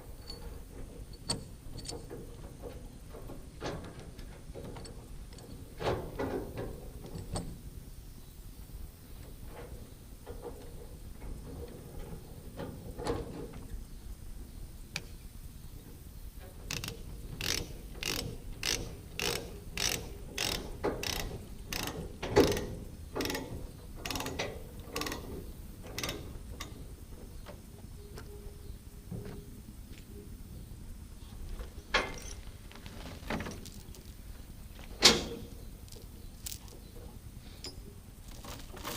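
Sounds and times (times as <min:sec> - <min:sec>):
sharp mechanical clicks: 0:16.6 - 0:25.3.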